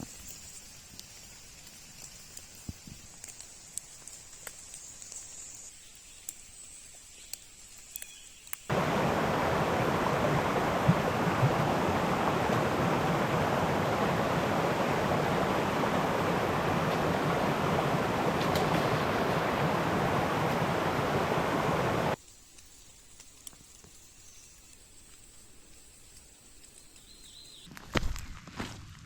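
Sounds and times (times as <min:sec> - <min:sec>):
mountain stream rushing: 0:08.7 - 0:22.2.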